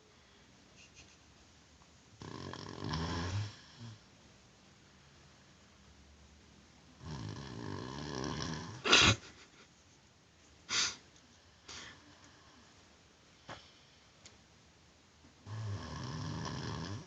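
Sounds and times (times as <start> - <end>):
person snoring: 2.2 - 4.0, 7.0 - 9.2, 15.4 - 17.0
loud burst of breath: 10.7 - 11.0.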